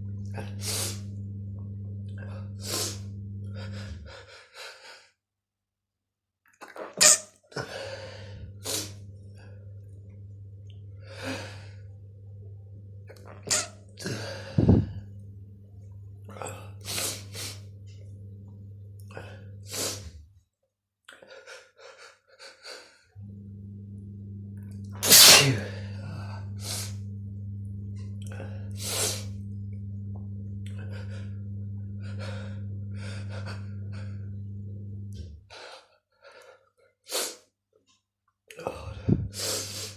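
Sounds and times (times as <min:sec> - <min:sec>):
steady low hum: 0:00.0 - 0:04.2, 0:07.9 - 0:20.2, 0:23.2 - 0:35.4, 0:38.8 - 0:39.9
person sneezing: 0:06.8 - 0:07.2, 0:25.0 - 0:25.8.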